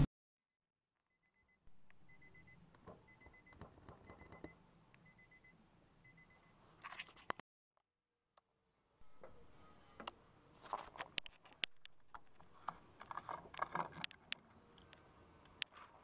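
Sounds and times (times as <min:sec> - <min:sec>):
faint electronic beeps: 0:01.1 - 0:06.7
faint clicks and knocks: 0:10.0 - 0:16.0.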